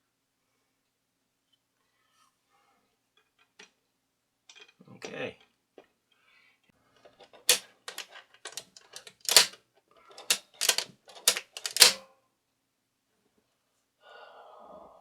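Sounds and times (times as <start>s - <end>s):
small metal parts clicking: 7.0s - 12.0s.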